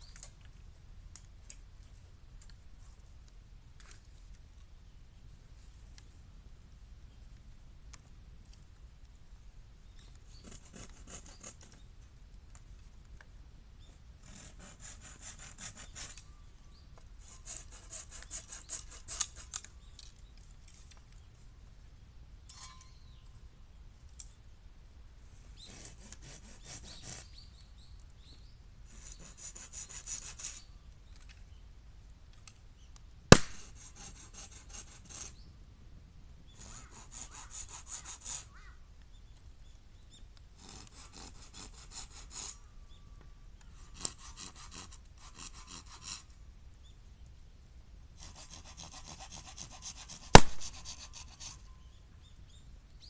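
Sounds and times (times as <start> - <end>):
hand saw cutting bamboo: 14.2 - 16.2, 17.2 - 19.6, 25.6 - 27.3, 33.3 - 35.3, 36.6 - 38.4, 40.6 - 42.6, 43.8 - 46.3, 48.2 - 51.6
bamboo cracking sharply: 33.3 - 33.7, 50.3 - 50.8.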